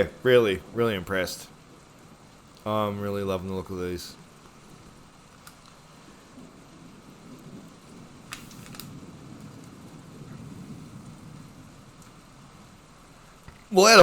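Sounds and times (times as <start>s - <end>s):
cards rustling: 8.3s - 8.9s.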